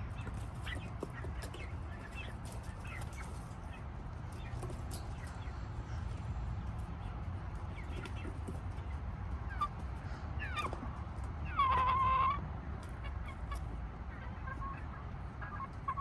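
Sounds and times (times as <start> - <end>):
chickens clucking: 0.0 - 16.0
chicken squawk: 9.5 - 12.4, 13.0 - 16.0.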